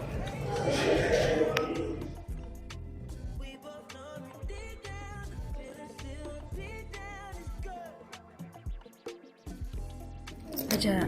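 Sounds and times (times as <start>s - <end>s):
voices chattering: 0.0s - 2.2s
music with steady beat: 0.0s - 11.0s.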